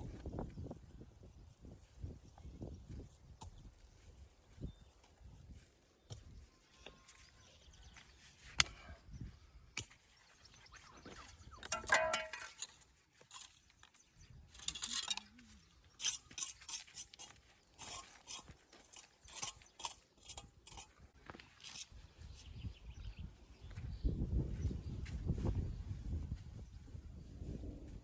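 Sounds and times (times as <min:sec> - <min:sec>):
stone work knocks and clinks: 0:11.6 - 0:13.5.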